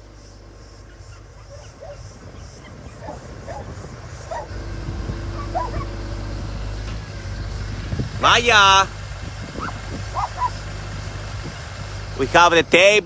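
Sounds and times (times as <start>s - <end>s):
motor humming: 0.0s - 13.0s
dogs yipping and whining: 1.0s - 7.0s, 9.4s - 10.9s.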